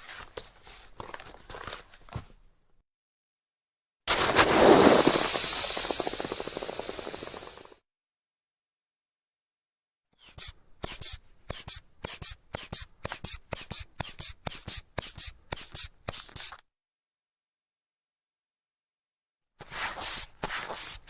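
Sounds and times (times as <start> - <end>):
rubber bulb puffing air: 19.6 - 21.0.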